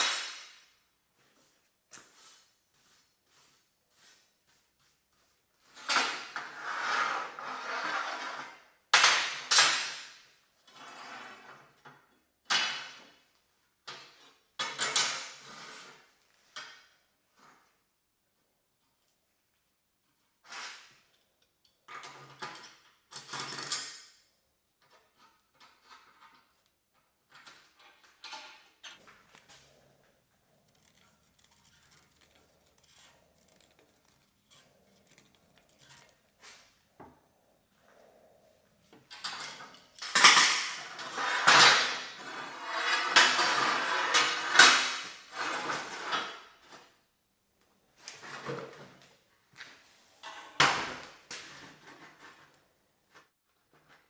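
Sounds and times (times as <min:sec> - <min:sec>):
metal tools clinking on workbench: 0:21.9 - 0:24.2, 0:39.1 - 0:46.3.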